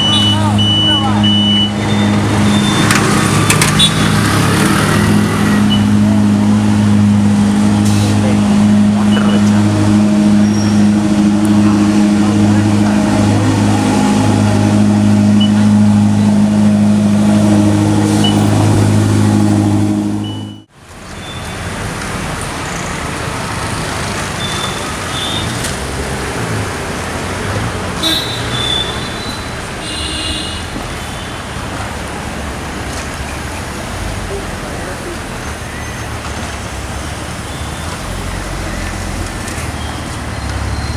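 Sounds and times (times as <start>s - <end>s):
car horn toots: 0.0s - 4.6s, 5.4s - 21.5s, 24.4s - 25.6s, 28.0s - 31.5s
vehicle engine droning: 0.0s - 29.9s, 30.6s - 40.9s
street traffic: 0.0s - 40.9s.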